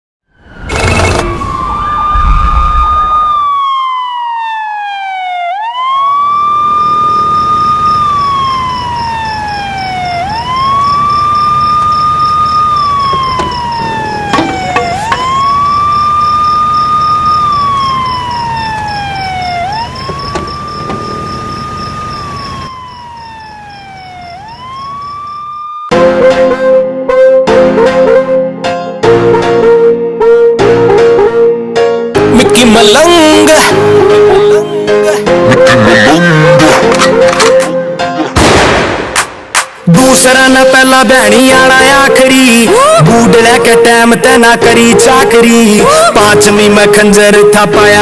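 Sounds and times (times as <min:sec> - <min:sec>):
siren wailing: 0:00.3 - 0:26.0, 0:32.9 - 0:38.0, 0:40.2 - 0:48.0
loud low rumble: 0:01.4 - 0:03.4.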